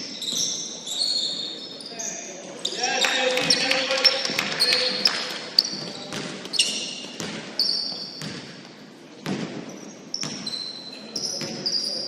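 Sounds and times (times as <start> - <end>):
sneaker squeaks: 0.0 - 12.0
basketball bouncing on court: 3.4 - 10.6, 11.3 - 11.7.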